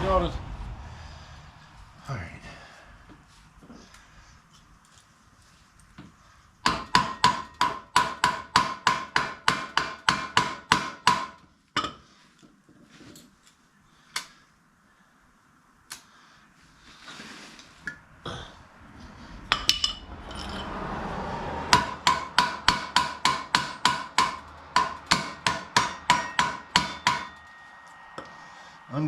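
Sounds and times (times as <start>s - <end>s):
hammer striking metal: 6.6s - 11.4s, 19.5s - 20.7s, 21.7s - 29.0s.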